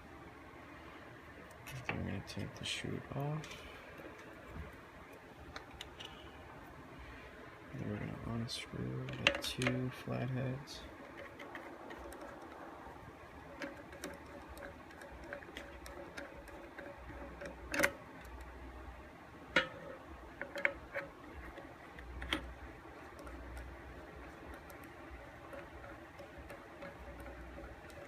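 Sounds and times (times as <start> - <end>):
screwdriver clicking on metal screws: 13.5 - 18.4.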